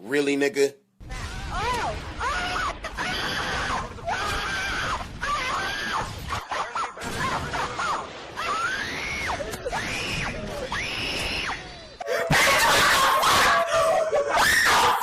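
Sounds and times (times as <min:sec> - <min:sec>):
high-pitched screaming: 0:08.4 - 0:15.0.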